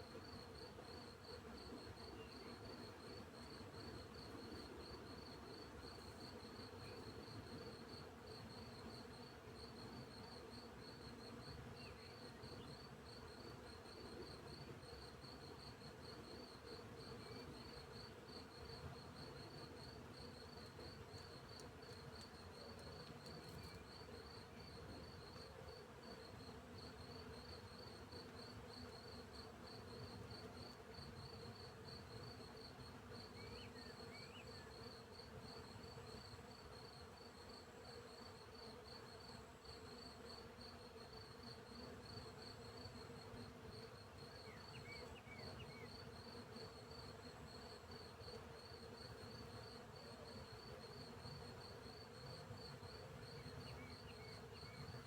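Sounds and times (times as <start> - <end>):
crickets chirping: 44.3 - 55.0.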